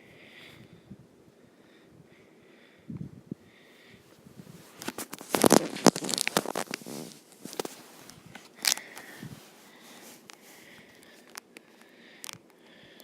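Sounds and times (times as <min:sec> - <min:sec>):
handling rustling and scraping: 0:04.1 - 0:12.5.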